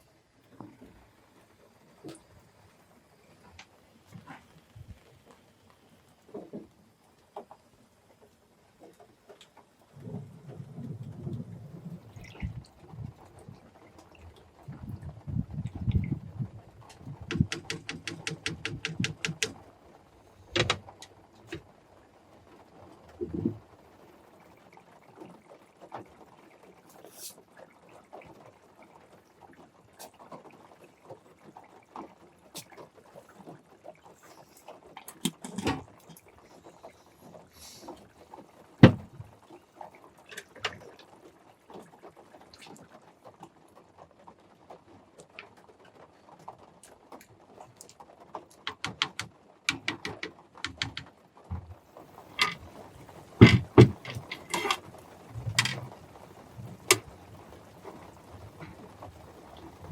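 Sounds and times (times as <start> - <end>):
irregular clicks and knocks: 16.9 - 19.6, 20.4 - 21.6, 35.0 - 36.2, 38.8 - 39.4, 48.5 - 56.0, 56.6 - 57.2.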